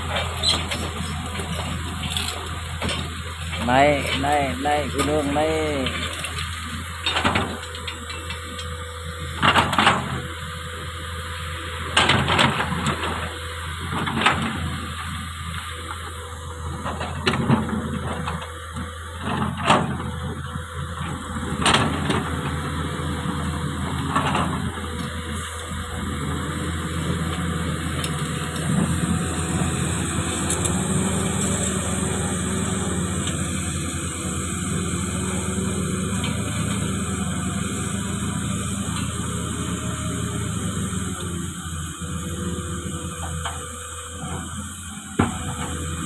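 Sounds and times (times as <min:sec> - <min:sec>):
excavator diesel engine running: 0:00.0 - 0:46.0.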